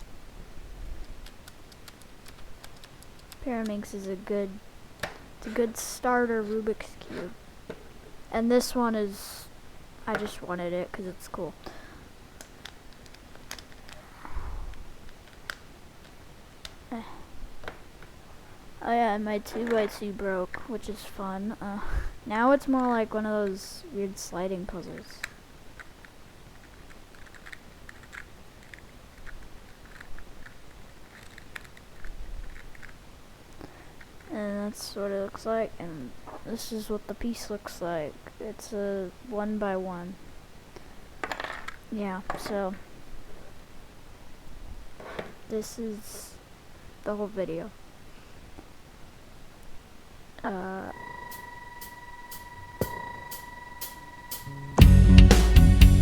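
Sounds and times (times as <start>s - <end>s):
puzzle cube plastic clicking: 1.0s - 3.8s, 12.4s - 14.0s, 25.0s - 34.3s
steady held tone: 50.6s - 56.0s
rock music with guitar and drums: 52.3s - 56.0s.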